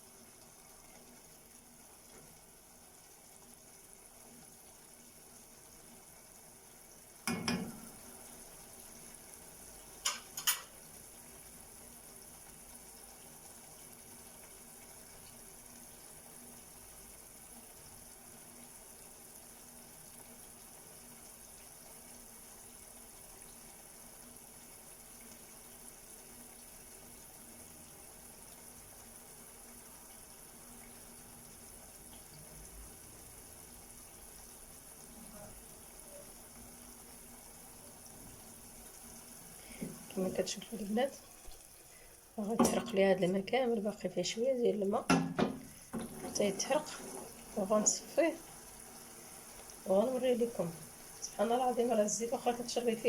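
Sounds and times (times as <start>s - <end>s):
pot simmering with faint bubbling: 0.0s - 53.0s
knock: 45.1s - 46.1s.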